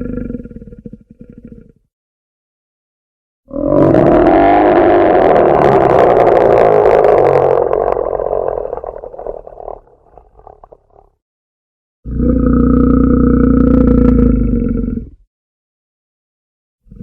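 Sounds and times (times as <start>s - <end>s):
bear roaring: 3.5s - 11.1s.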